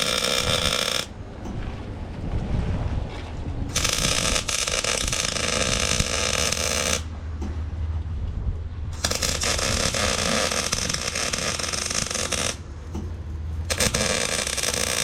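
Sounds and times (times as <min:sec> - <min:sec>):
welding arc crackling: 0:00.0 - 0:01.1, 0:03.7 - 0:07.1, 0:09.0 - 0:12.6, 0:13.7 - 0:15.0
wind rumbling on microphone: 0:00.4 - 0:14.8.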